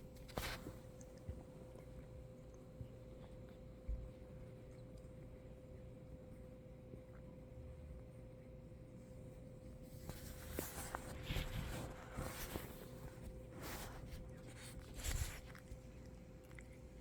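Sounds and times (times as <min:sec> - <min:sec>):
scratchy rubbing and rustling: 0:00.0 - 0:01.0, 0:09.8 - 0:17.0.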